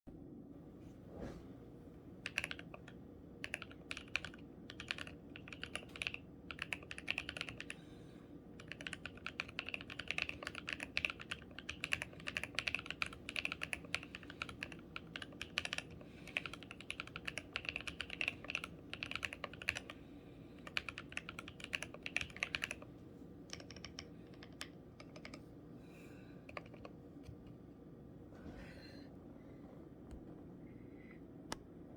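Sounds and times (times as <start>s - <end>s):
mechanical keyboard typing: 2.2s - 7.8s, 8.6s - 20.0s, 20.6s - 22.9s, 23.5s - 25.4s, 26.5s - 26.9s.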